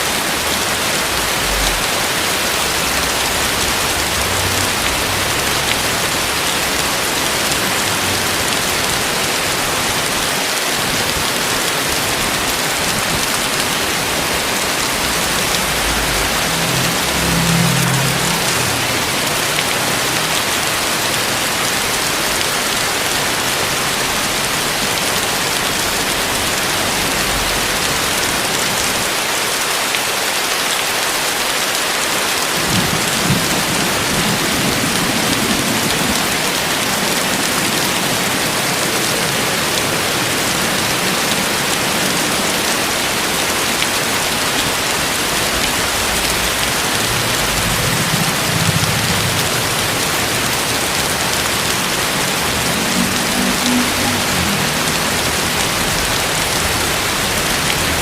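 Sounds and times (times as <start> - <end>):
heavy rain falling: 0.0 - 58.0
low rumble: 14.1 - 21.3.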